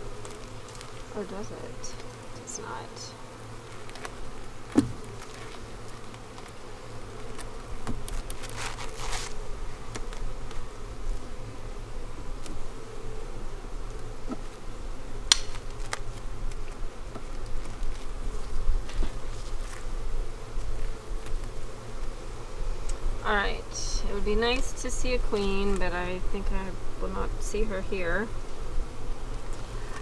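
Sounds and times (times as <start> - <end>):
honeybees buzzing: 0.0 - 30.0
rasping scrape: 8.1 - 9.4.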